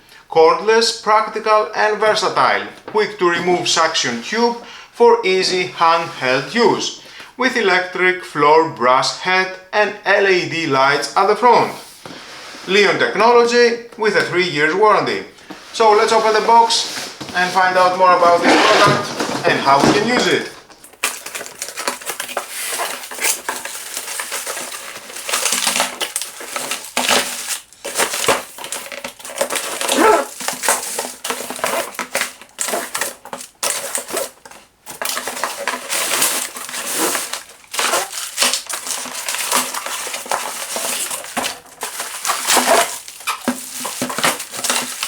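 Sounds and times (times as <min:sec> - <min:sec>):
packaging rustling and crinkling: 0:15.3 - 0:45.0
plastic parts knocking: 0:17.2 - 0:45.0.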